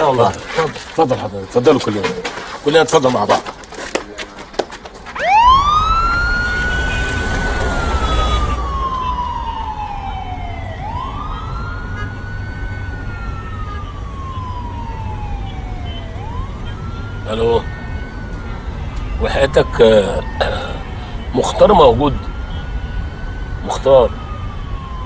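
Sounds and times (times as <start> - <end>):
police siren wailing: 5.1 - 25.0.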